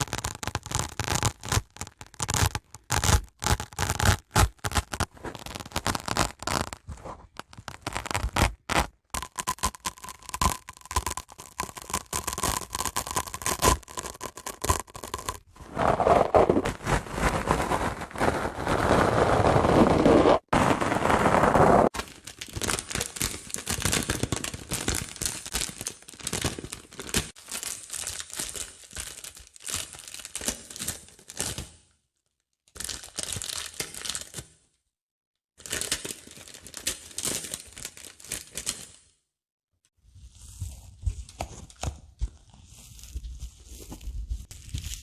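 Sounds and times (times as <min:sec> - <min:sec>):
dry sponge crackling: 0:00.0 - 0:22.0.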